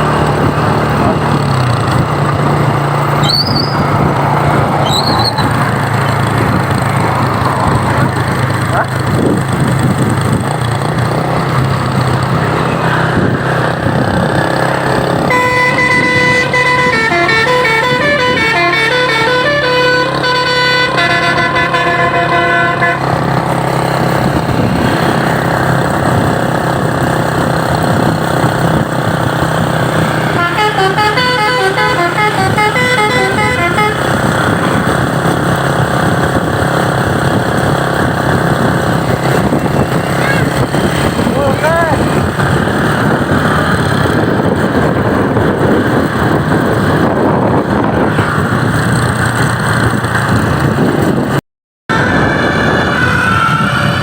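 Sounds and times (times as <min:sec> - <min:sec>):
traffic: 0:00.0 - 0:54.0
truck engine: 0:00.0 - 0:54.0
musical air horns melody: 0:15.3 - 0:23.3, 0:30.2 - 0:35.0.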